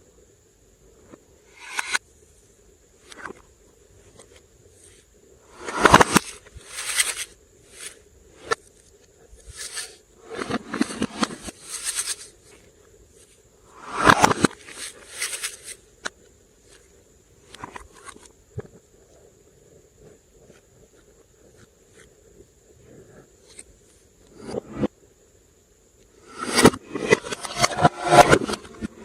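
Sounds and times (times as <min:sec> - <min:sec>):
sharp clicks and pops: 0:05.6 - 0:12.3.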